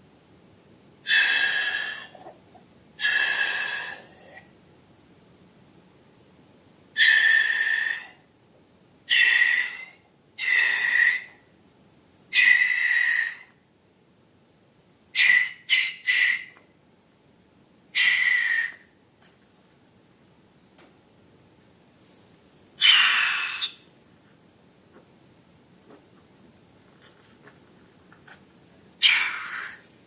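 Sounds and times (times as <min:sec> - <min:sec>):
air squealing out of balloon: 0:01.0 - 0:02.3, 0:03.0 - 0:04.1, 0:22.8 - 0:23.8, 0:29.0 - 0:29.9.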